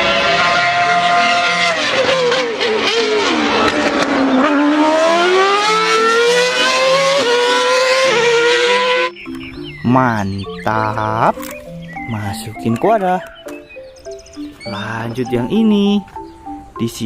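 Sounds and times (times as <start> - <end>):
race car engine at high revs: 0.0 - 9.2.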